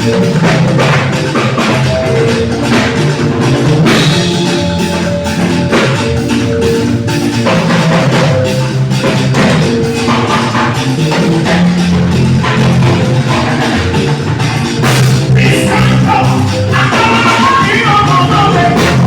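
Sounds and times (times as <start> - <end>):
drums and hand percussion: 0.0 - 19.0
held pitched notes: 0.0 - 19.0.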